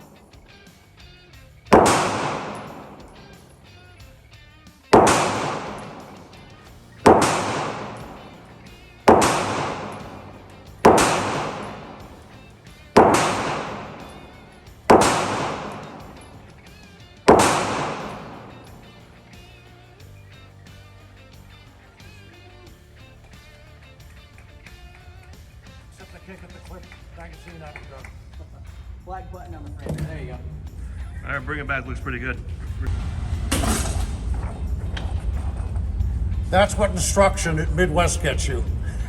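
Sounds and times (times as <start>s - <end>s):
faint background music: 0.0s - 39.0s
handgun shots echoing: 1.7s - 3.7s, 4.9s - 19.6s, 29.8s - 32.1s, 32.8s - 35.8s.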